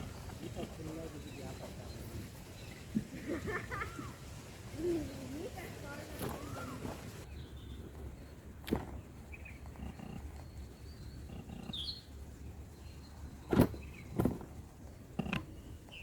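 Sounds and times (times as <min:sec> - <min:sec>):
low outdoor rumble: 0:00.0 - 0:16.0
high bird chirps: 0:10.3 - 0:14.2.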